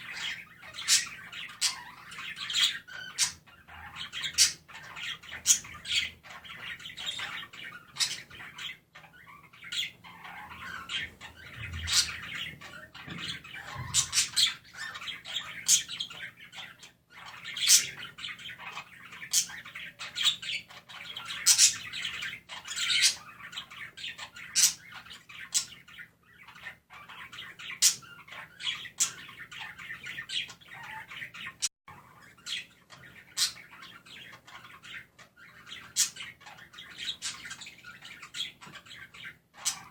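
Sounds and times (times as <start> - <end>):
budgies chirping and warbling: 0.0 - 39.9.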